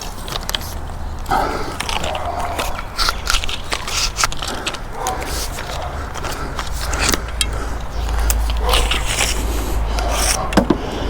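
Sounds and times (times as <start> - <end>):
cable scraping and rustling: 0.0 - 11.0.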